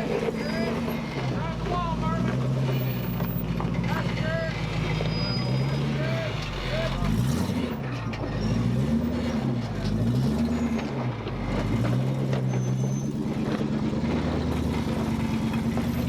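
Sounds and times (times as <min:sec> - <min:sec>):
engine revving: 0:00.0 - 0:16.0.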